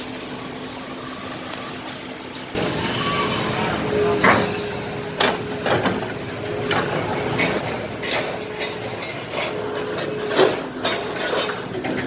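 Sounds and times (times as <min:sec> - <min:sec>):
excavator machine whine: 0:00.0 - 0:12.0
high metallic squeals: 0:07.4 - 0:10.3.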